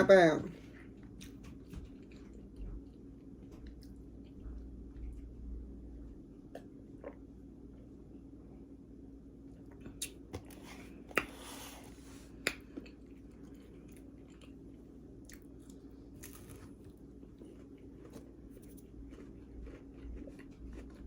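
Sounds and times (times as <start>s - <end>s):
person chewing: 0.7s - 5.3s, 9.7s - 21.0s.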